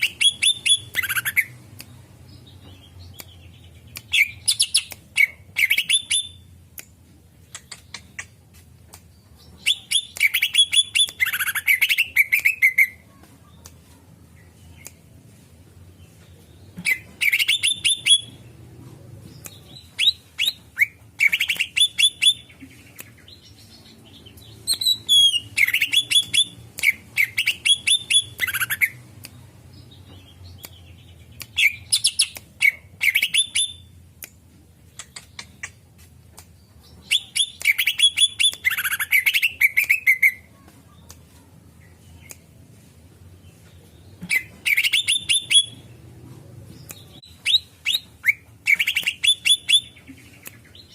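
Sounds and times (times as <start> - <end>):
bird chirping rapidly: 0.0 - 1.6, 16.8 - 18.4, 24.1 - 29.0, 30.2 - 33.9, 44.3 - 45.9, 47.1 - 50.0.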